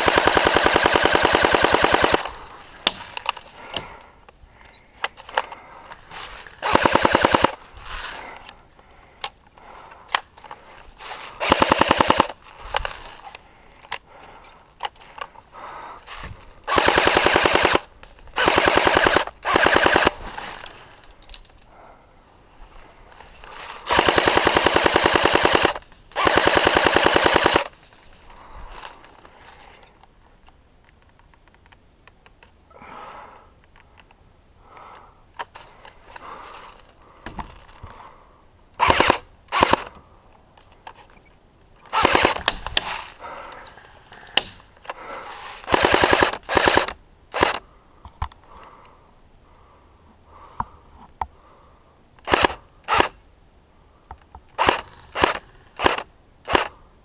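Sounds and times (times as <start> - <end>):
airsoft guns firing bursts: 0.0 - 2.4, 6.6 - 7.6, 11.4 - 12.4, 16.7 - 20.2, 23.9 - 27.7, 38.8 - 39.9, 41.9 - 42.6, 45.7 - 47.6.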